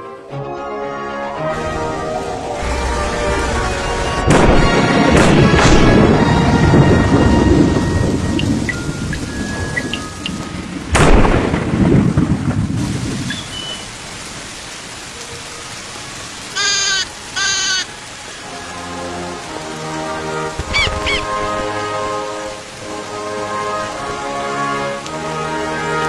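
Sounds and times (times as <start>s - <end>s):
rain falling: 0.0s - 26.0s
thunder rumbling: 1.4s - 17.6s
sharp thunderclap: 1.6s - 13.4s.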